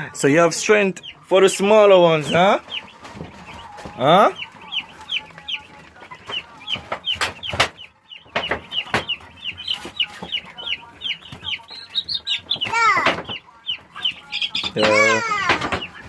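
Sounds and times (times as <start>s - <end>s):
chickens calling: 0.0s - 16.0s
sharp knocks: 6.9s - 9.2s.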